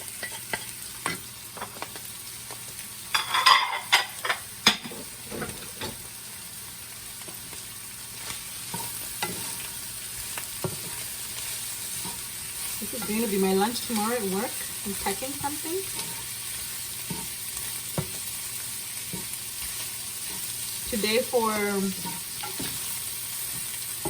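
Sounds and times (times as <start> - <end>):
food sizzling in a frying pan: 0.0 - 24.0
utensil scraping a pan: 8.2 - 9.8, 14.9 - 18.2.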